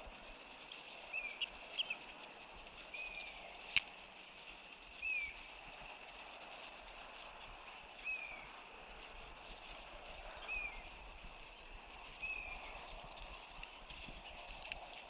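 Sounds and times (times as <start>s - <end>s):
faint outdoor hiss: 0.0s - 15.0s
bird high-pitched calls: 1.1s - 2.0s.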